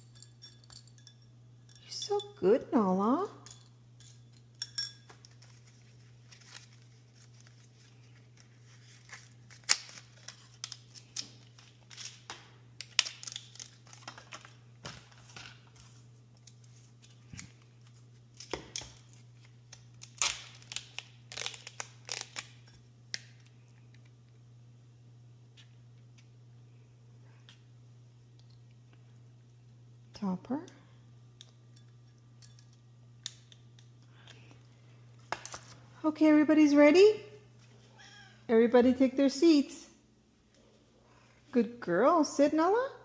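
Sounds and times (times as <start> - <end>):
faint low hum: 0.0 - 43.0.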